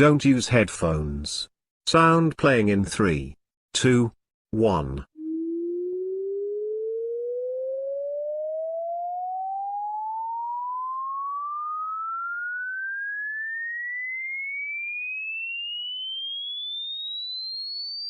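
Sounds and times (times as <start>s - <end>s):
rising sine tone sweep: 5.2s - 18.0s.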